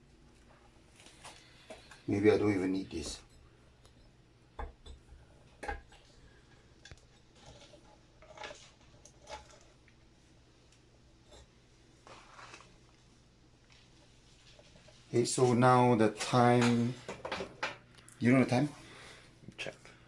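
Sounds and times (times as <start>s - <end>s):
soft rustling: 11.9s - 17.1s.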